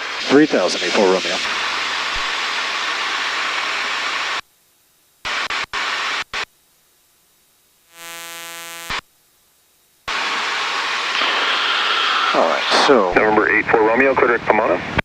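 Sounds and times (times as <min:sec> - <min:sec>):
short bursts of noise: 0:05.2 - 0:06.5, 0:07.8 - 0:09.1
buzzing tone: 0:05.2 - 0:10.1.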